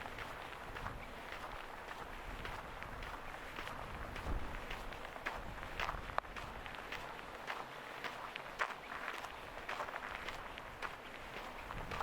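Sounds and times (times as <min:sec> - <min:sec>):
footsteps scuffing: 0:00.0 - 0:12.0.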